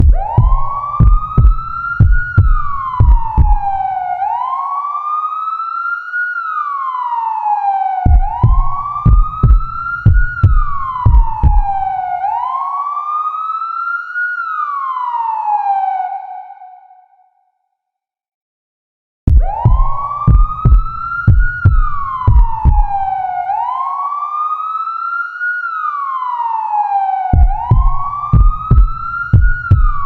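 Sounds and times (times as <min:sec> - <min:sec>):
quick heavy thumps: 0:00.0 - 0:03.8, 0:08.1 - 0:11.9, 0:19.3 - 0:23.1, 0:27.4 - 0:30.0
siren wailing up and down: 0:00.0 - 0:17.4, 0:19.3 - 0:30.0.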